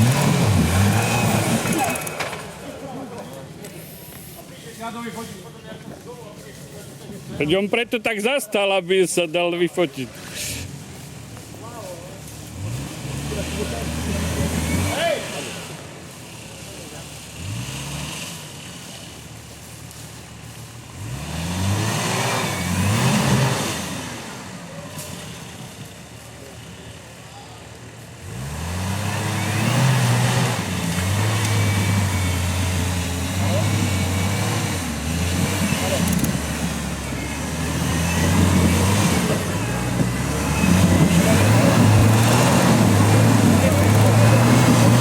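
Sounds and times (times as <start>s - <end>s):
engine revving hard: 0.0s - 2.2s, 12.5s - 18.7s, 20.9s - 25.6s, 28.2s - 45.0s.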